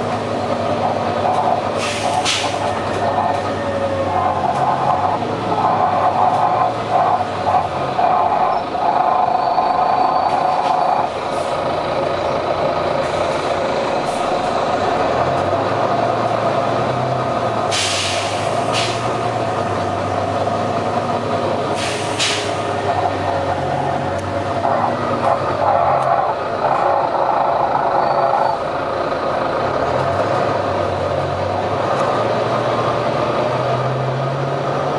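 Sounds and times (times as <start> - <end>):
bus diesel engine droning: 0.0 - 34.9
engine hissing burst: 0.8 - 3.4, 17.7 - 19.2, 21.7 - 23.6.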